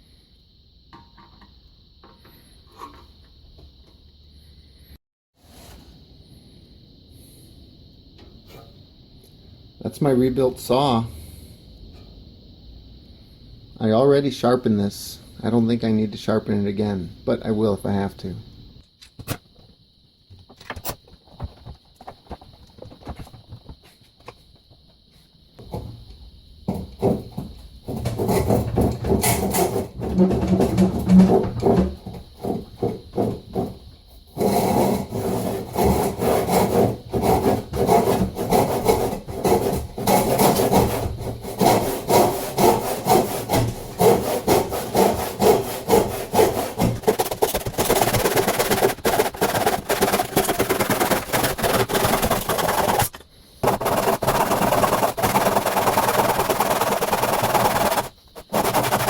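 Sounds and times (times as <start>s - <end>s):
hand saw cutting wood: 27.9s - 33.7s, 34.4s - 59.0s.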